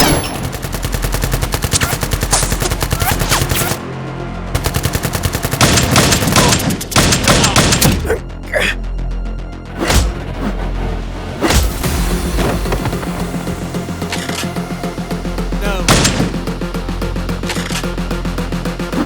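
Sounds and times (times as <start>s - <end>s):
automatic gunfire bursts: 0.0s - 3.8s, 4.6s - 8.0s
background music: 0.0s - 19.0s.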